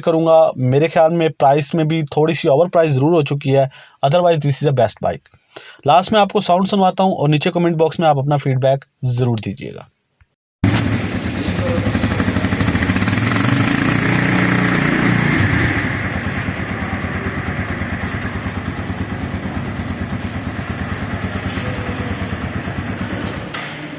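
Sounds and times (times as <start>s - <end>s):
motorcycle engine idling: 10.6s - 23.4s.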